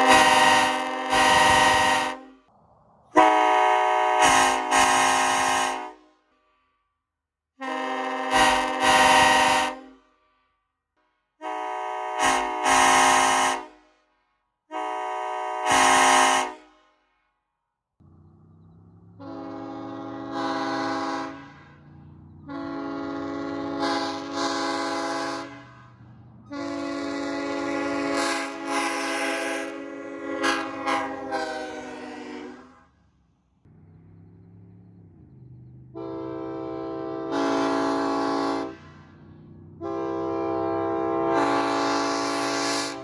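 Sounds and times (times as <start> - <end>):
train horn chord blasts: 0.0 - 2.5, 3.2 - 6.3, 7.6 - 10.5, 11.4 - 14.0, 14.7 - 17.0, 19.2 - 33.0, 35.9 - 43.0
steady low rumble: 1.3 - 5.2, 18.0 - 28.6, 38.7 - 40.4.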